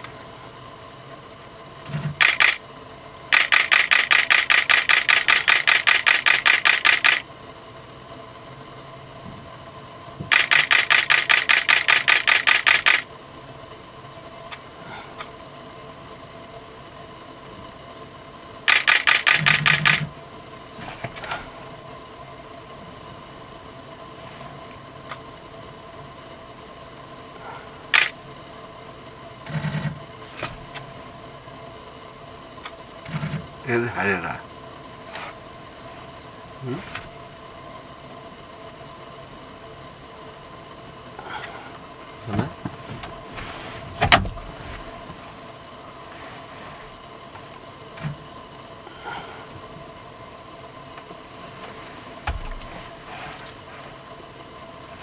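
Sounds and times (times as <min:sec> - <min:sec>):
camera shutter clicking: 0:02.2 - 0:02.6, 0:03.3 - 0:07.2, 0:10.3 - 0:13.1, 0:18.7 - 0:20.1, 0:28.0 - 0:28.2.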